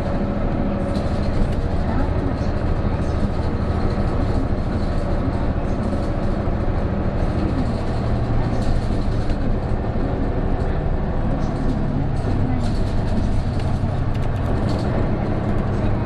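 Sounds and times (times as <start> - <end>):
bus diesel engine drone: 0.0 - 16.0.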